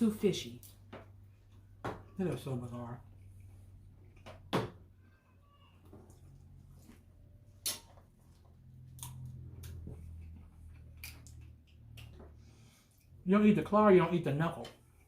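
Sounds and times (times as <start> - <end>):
low steady hum: 0.0 - 15.0
food being chewed: 6.0 - 13.2.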